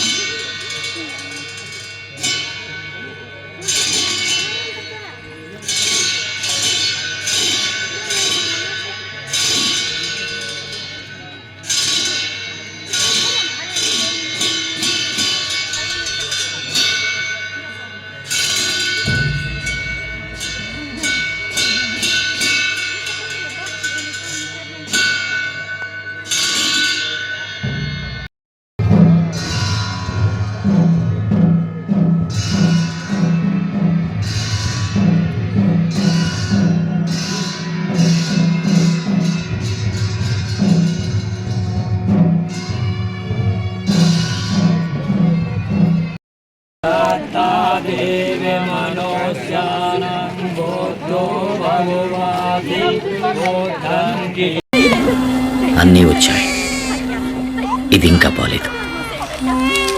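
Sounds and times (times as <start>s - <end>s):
cymbal crashes: 18.4s - 23.9s
drum-led music: 19.0s - 22.6s
person chanting: 46.8s - 59.9s.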